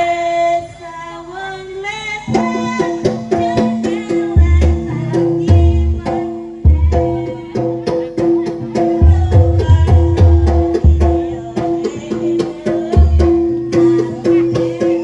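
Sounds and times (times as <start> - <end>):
struck percussion notes and drum: 2.3 - 15.0.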